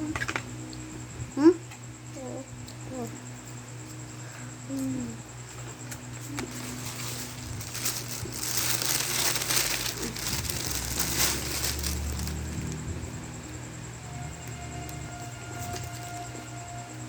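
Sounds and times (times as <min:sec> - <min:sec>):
steady low hum: 0:00.0 - 0:17.0
food packaging crinkling and crunching: 0:05.9 - 0:12.9, 0:15.6 - 0:16.4.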